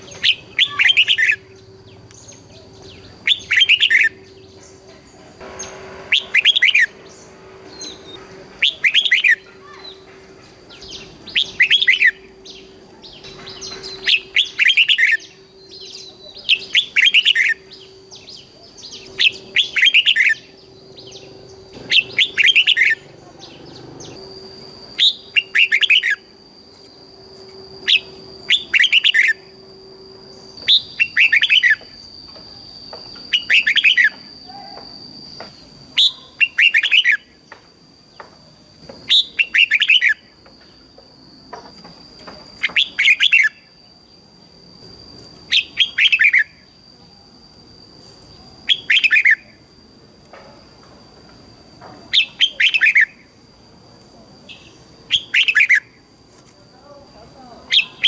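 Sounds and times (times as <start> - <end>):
bird singing bubbly phrase: 0.0 - 1.6
faint high whine: 0.0 - 58.0.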